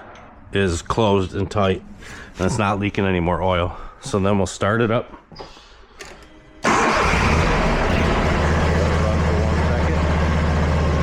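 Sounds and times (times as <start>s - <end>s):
mower engine starting and running: 6.6s - 11.0s.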